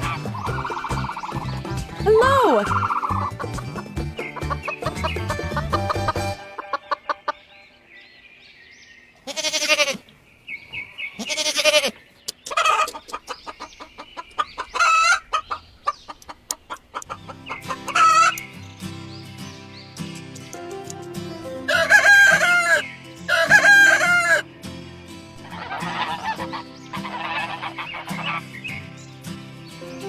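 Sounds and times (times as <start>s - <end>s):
faint background music: 0.0s - 7.2s
chickens clucking and squawking: 0.0s - 7.9s, 12.4s - 18.4s, 21.6s - 24.5s, 25.4s - 28.9s.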